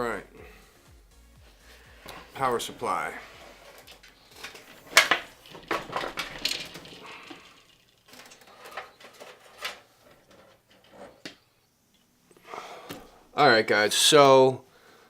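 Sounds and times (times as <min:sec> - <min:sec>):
handling clicks knocks and scrapes: 0:03.6 - 0:11.4.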